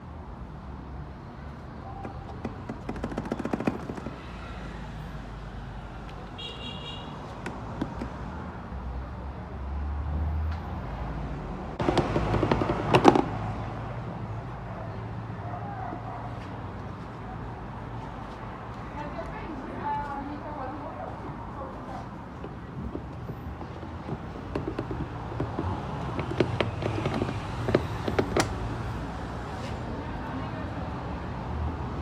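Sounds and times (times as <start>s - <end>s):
motorcycle seat rattling: 2.0s - 4.3s, 22.5s - 28.8s.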